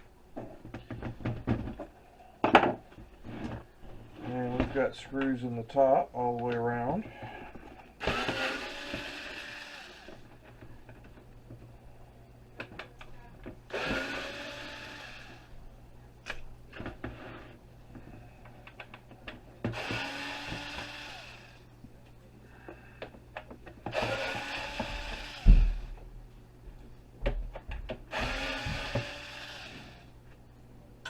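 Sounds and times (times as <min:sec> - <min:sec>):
power drill whining: 0:08.0 - 0:10.2, 0:13.7 - 0:15.5, 0:19.7 - 0:21.6, 0:23.9 - 0:25.8, 0:28.1 - 0:30.1.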